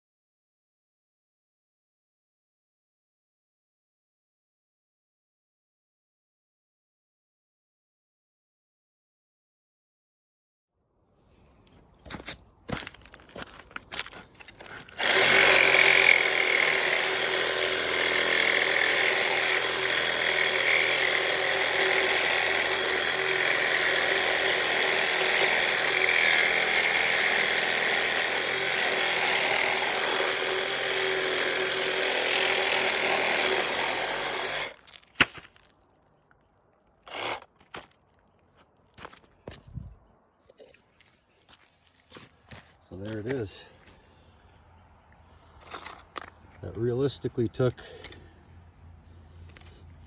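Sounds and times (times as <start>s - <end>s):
reciprocating saw cutting: 14.8s - 34.8s, 37.0s - 37.5s.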